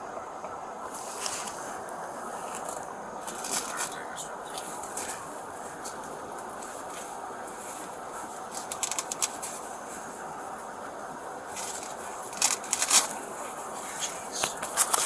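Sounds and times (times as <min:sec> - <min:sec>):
steady background hiss: 0:00.0 - 0:15.0
rustling scraping clicks: 0:02.4 - 0:10.1, 0:11.5 - 0:15.0.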